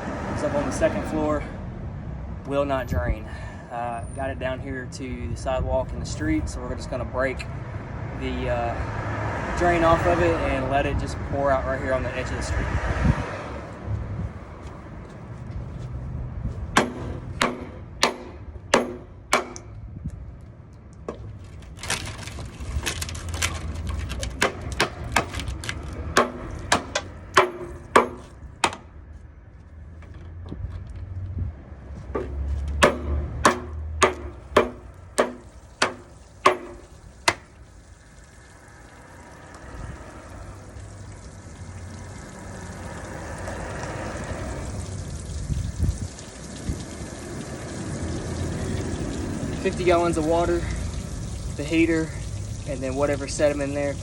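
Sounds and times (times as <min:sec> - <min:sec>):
hammer striking metal valve: 0:16.8 - 0:19.8, 0:26.2 - 0:28.9, 0:32.2 - 0:37.5.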